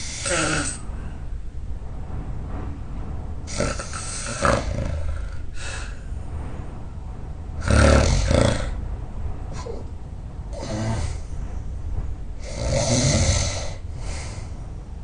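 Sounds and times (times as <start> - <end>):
breath sound: 13.6 - 14.7.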